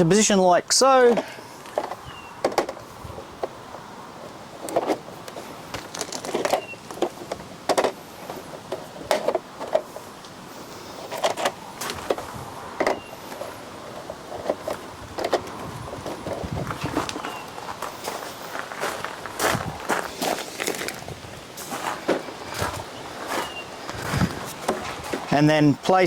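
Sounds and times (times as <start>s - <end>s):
plastic channels knocking and clattering: 1.1s - 2.8s, 5.8s - 9.9s, 11.0s - 17.4s.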